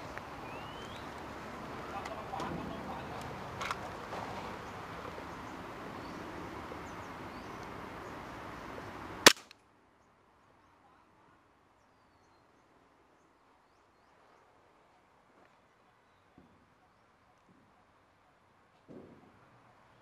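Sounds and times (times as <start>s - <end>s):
outdoor background noise: 0.0s - 20.0s
loud sharp crack: 9.2s - 9.6s.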